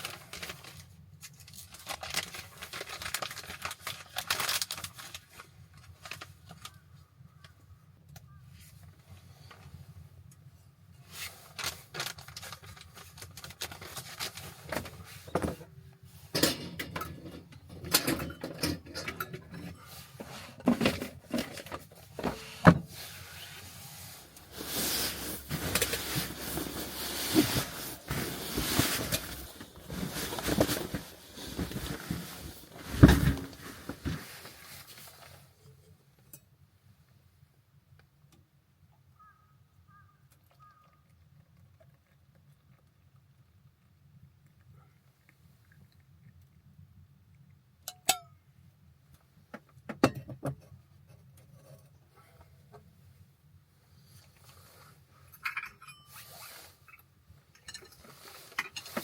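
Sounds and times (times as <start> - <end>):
continuous rustling: 0.0 - 7.1, 8.5 - 35.6, 51.0 - 59.0
objects knocking and clattering: 14.6 - 23.0, 24.4 - 34.4.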